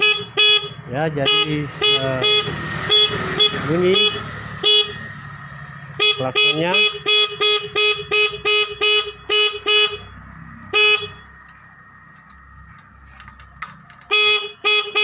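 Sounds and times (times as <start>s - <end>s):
motorcycle horn beeping: 0.0s - 5.2s, 5.9s - 11.4s, 13.9s - 15.0s.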